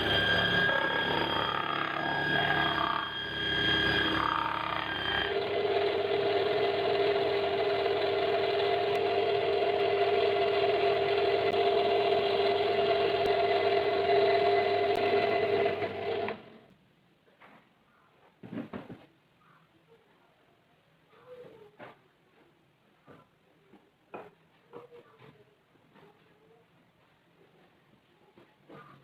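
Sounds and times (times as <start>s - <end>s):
short tones: 0.0s - 16.5s
electric power tool humming: 0.0s - 16.6s.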